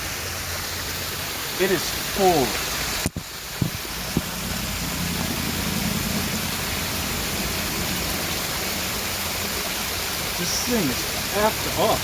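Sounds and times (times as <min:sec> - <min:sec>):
water rushing into drain: 0:00.0 - 0:12.0.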